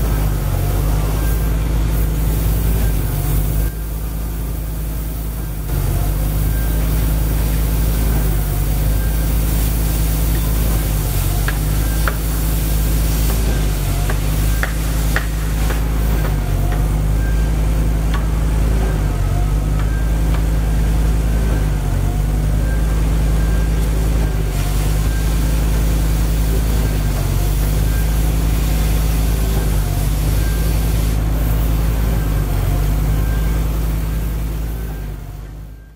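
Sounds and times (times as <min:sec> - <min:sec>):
cutting torch hissing and sizzling: 0:00.1 - 0:16.2, 0:24.5 - 0:32.0.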